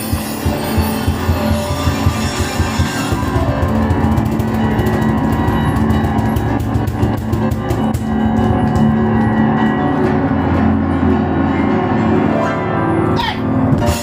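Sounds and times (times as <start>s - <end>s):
cajon percussion: 0.0s - 10.7s
piano chords: 0.0s - 14.0s.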